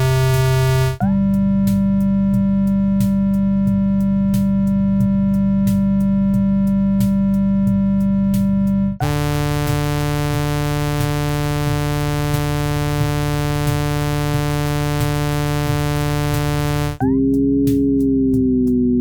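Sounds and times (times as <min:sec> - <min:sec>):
synth tone with harmonics: 0:00.0 - 0:06.2, 0:09.0 - 0:17.0.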